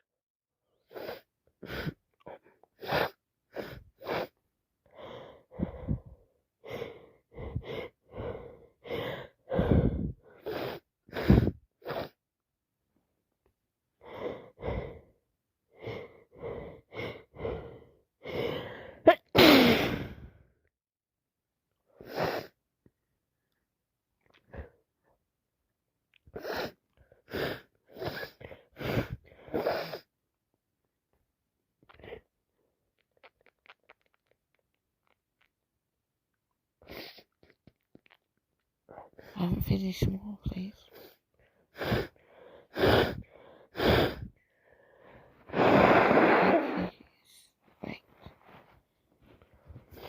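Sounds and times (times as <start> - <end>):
woman sniffing congested nose: 0.9 - 2.0, 2.8 - 4.4, 9.5 - 12.2, 18.2 - 20.3, 22.0 - 22.6, 26.3 - 30.1, 36.8 - 37.4, 41.8 - 44.4, 45.4 - 47.1
woman sneezing: 19.1 - 20.0.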